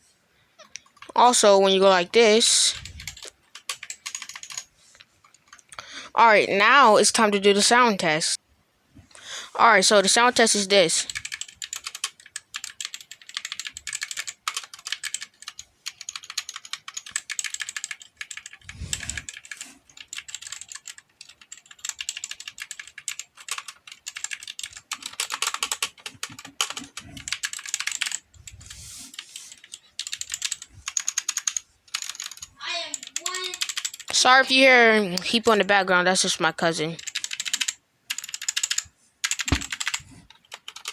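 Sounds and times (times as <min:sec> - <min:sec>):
mechanical keyboard typing: 0:02.7 - 0:05.8, 0:11.1 - 0:28.3, 0:29.1 - 0:34.1, 0:37.0 - 0:40.9.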